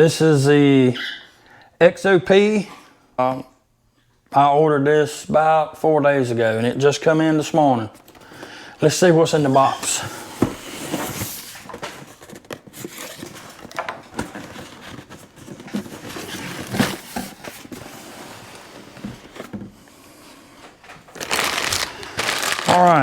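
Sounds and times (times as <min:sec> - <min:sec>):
cardboard box being opened: 0:09.3 - 0:19.8.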